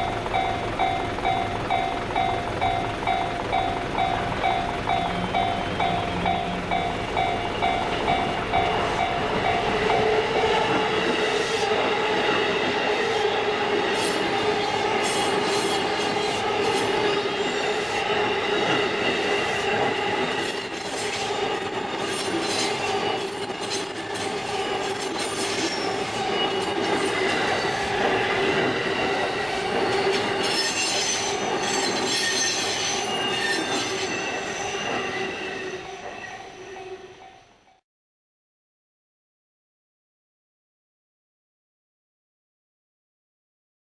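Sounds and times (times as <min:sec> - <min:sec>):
level-crossing bell dinging: 0:00.0 - 0:11.3, 0:25.4 - 0:37.8
electric train passing: 0:00.0 - 0:37.8
train wheel squeal: 0:00.0 - 0:37.8.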